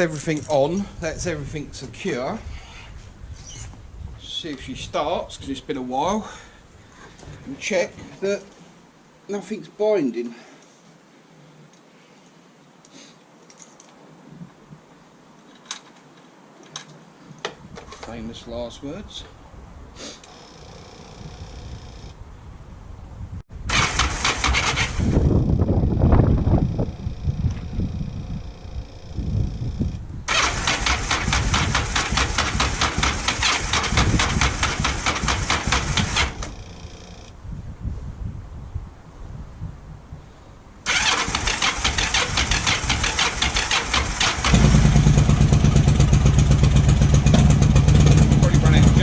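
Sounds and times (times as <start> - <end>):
faint handling noises: 10.2 - 18.4
motorcycle engine cranking: 23.7 - 25.2, 26.8 - 37.4, 40.9 - 49.0.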